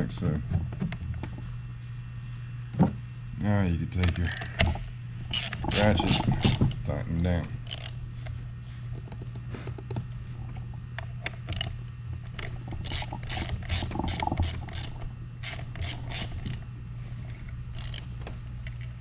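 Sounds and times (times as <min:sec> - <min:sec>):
hand ratchet clicking: 0:05.3 - 0:06.6, 0:07.6 - 0:08.0, 0:12.4 - 0:16.6, 0:17.7 - 0:18.1.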